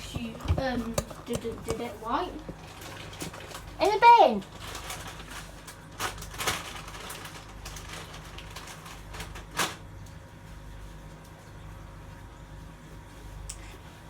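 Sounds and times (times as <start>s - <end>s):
faint room hum: 0.0s - 14.0s.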